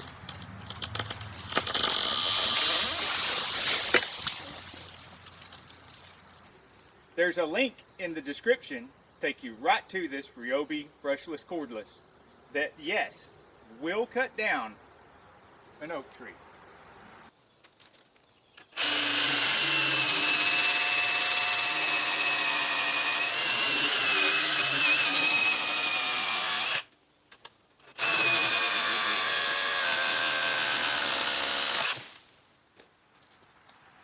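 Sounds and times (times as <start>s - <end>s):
reciprocating saw running: 1.6s - 4.0s, 18.8s - 26.9s, 27.8s - 32.1s.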